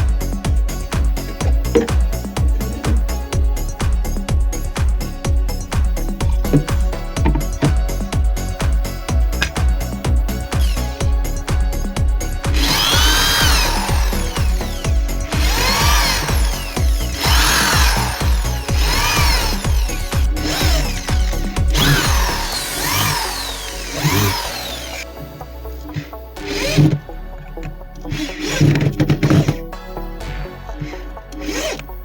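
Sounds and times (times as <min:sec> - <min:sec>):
background music with steady beat: 0:00.0 - 0:32.0
power tool motor revving: 0:09.3 - 0:11.4, 0:12.4 - 0:25.3, 0:26.0 - 0:27.0, 0:28.1 - 0:29.6, 0:30.8 - 0:31.9.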